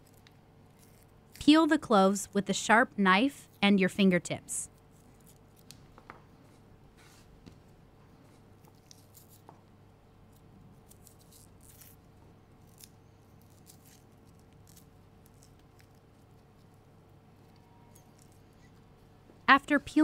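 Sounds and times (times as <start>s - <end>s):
garlic cloves being peeled: 0.0s - 1.7s, 4.7s - 6.5s, 8.2s - 9.6s, 10.2s - 18.9s
room hum: 0.0s - 20.0s.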